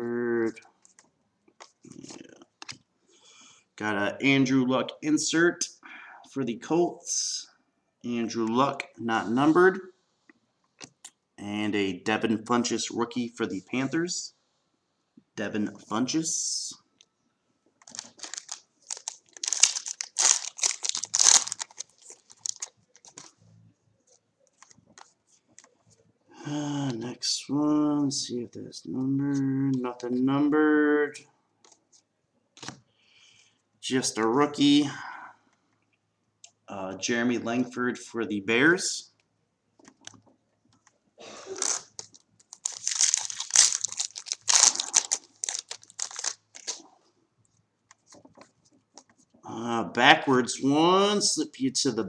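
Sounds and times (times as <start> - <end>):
card pack wrapper crinkling and tearing: 17.8 - 23.3, 41.5 - 46.9
cards rustling: 17.8 - 23.4, 24.1 - 25.8, 41.5 - 47.0.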